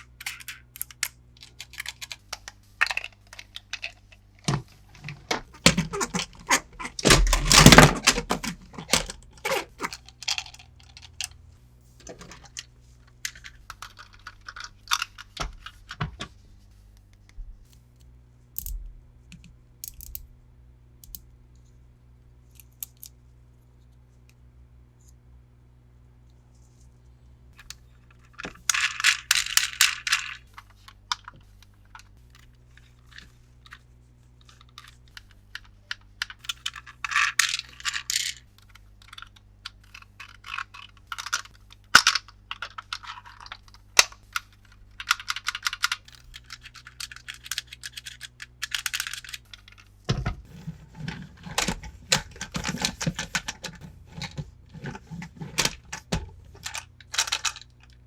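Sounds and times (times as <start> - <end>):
toy packaging crinkling: 0.0 - 11.3, 13.2 - 15.8, 36.5 - 38.4, 39.0 - 49.8, 50.5 - 58.0
plastic clatter: 1.6 - 11.3, 12.0 - 12.6, 39.1 - 58.0.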